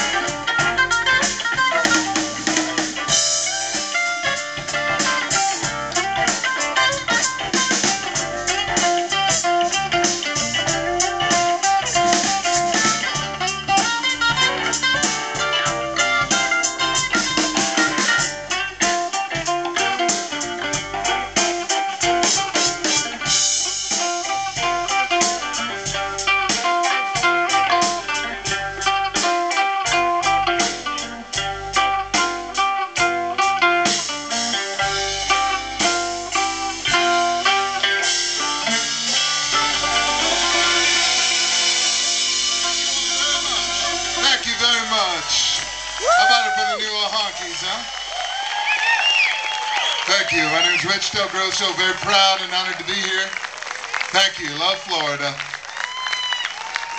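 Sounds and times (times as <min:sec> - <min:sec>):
blues band playing instrumental: 0:00.0 - 0:56.9.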